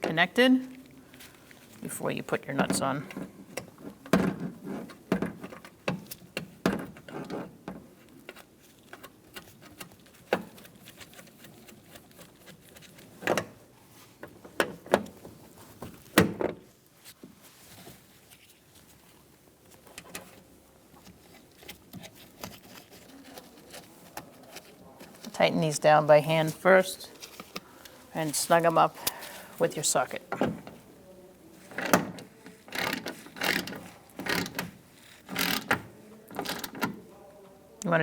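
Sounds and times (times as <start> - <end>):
door handle parts clicking and knocking: 31.7 - 37.0.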